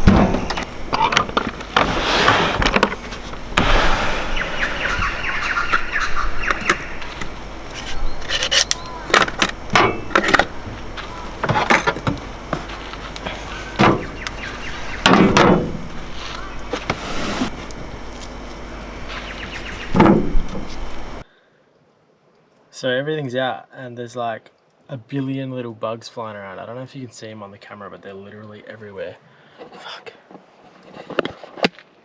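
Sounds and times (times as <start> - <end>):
gear clunking and rattling: 0.0 - 3.7, 5.7 - 21.2.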